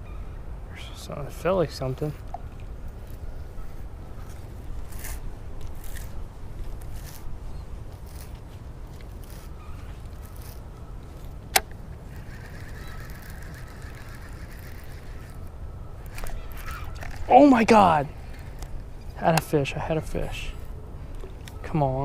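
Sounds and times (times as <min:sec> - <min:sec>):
sharp click: 0:11.5 - 0:11.8.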